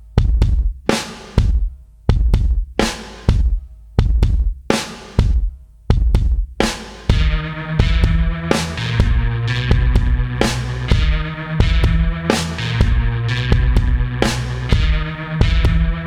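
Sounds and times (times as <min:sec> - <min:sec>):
electronic drum beat: 0:00.0 - 0:16.0
sustained bass line: 0:07.1 - 0:16.0.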